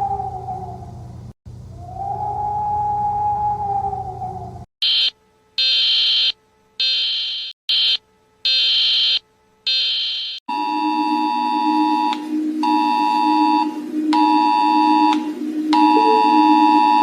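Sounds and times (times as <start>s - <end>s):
steady electronic tone: 10.5s - 17.0s
high-pitched electronic beeps: 10.8s - 17.0s.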